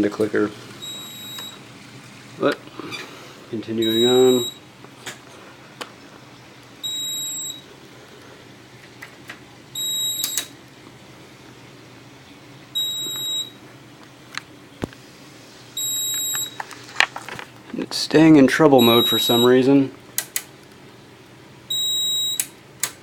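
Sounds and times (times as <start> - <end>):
high alarm panel beeps: 0.8 - 1.6, 3.8 - 4.7, 6.8 - 7.6, 9.8 - 10.5, 12.8 - 13.6, 15.8 - 16.6, 18.8 - 19.6, 21.7 - 22.5.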